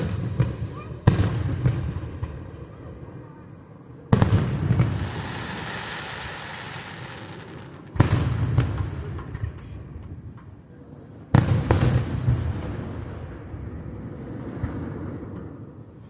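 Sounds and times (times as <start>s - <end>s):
fireworks booms: 0.0s - 2.9s, 4.1s - 10.0s, 11.3s - 15.4s
fireworks crackling: 4.2s - 9.6s.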